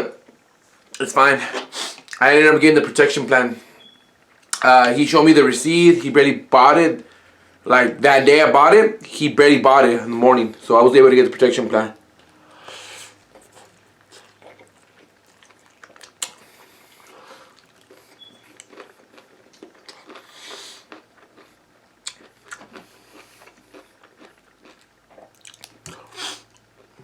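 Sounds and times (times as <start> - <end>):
person chewing food: 12.2 - 27.0.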